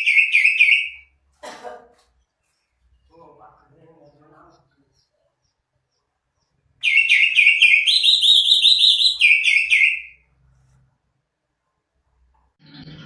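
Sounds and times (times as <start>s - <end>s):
bird chirping rapidly: 0.0s - 1.1s, 2.2s - 10.3s.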